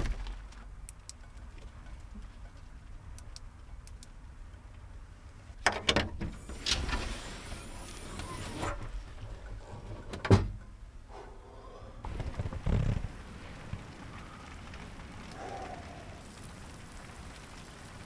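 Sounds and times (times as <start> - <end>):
door sliding rush: 6.2 - 16.8.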